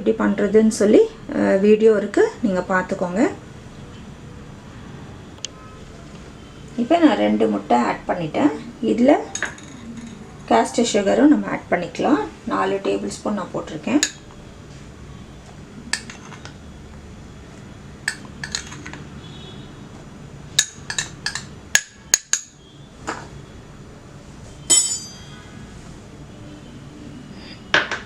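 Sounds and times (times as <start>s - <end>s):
utensils clinking against a bowl: 9.3s - 10.5s, 14.0s - 14.3s, 15.9s - 16.6s, 18.1s - 19.1s, 20.6s - 23.3s, 24.7s - 25.3s.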